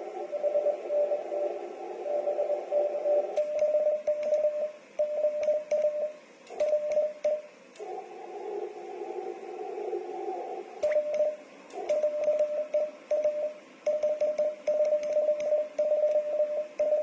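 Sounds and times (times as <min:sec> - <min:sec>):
radio receiver hiss: 0:00.0 - 0:17.0
morse code tones: 0:00.3 - 0:07.4, 0:10.9 - 0:17.0
sharp clicks between tones: 0:03.4 - 0:07.9, 0:10.8 - 0:17.0.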